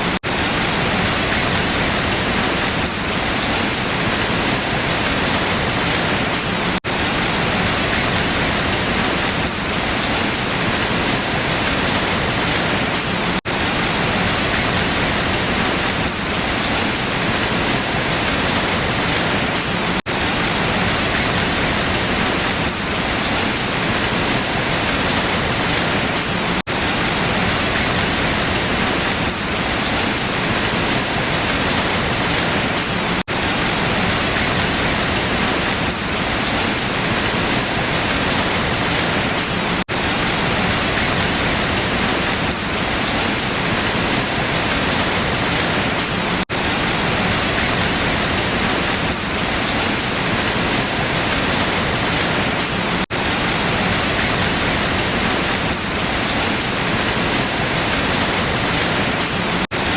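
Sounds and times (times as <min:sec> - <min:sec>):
rain falling on leaves: 0:00.0 - 0:59.9.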